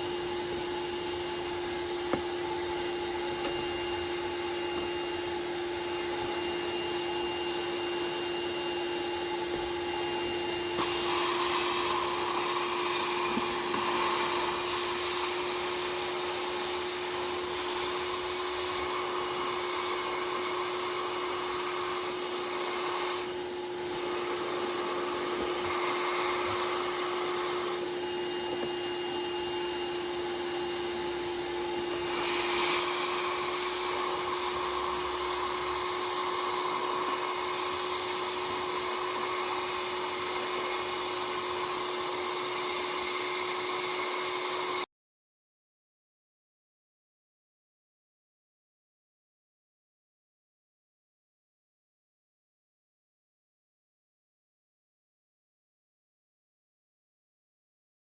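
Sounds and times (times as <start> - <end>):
carpet cleaner vacuum motor drone: 0.0 - 44.9.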